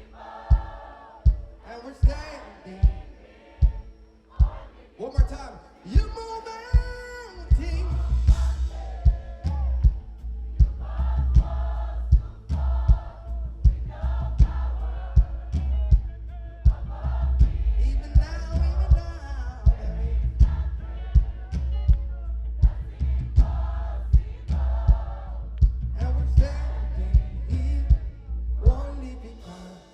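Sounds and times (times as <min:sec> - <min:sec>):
drum beat: 0:00.0 - 0:05.4, 0:06.0 - 0:29.9
choir of voices singing: 0:00.0 - 0:29.9
heavy bass line: 0:06.8 - 0:29.8.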